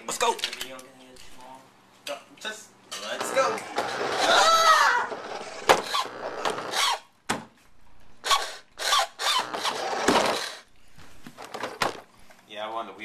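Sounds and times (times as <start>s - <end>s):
toy car motor whirring: 3.3s - 7.1s, 8.2s - 10.7s.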